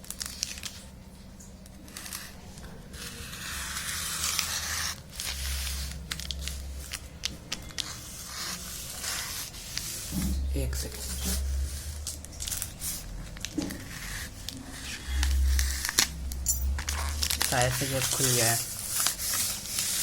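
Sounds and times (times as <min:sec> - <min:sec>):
packaging crackling and rustling: 0:00.0 - 0:01.0, 0:11.3 - 0:20.0
packaging ripping: 0:12.0 - 0:20.0.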